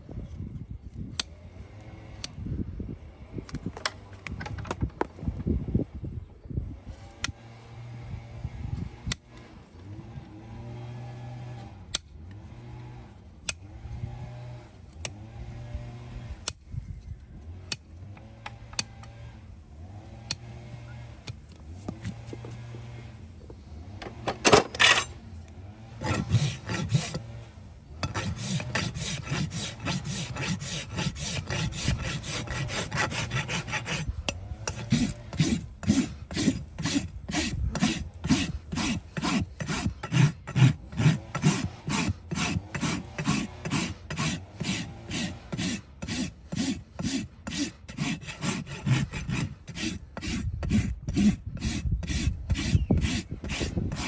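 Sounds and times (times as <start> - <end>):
hand file rasping: 26.0 - 27.3, 28.0 - 54.0.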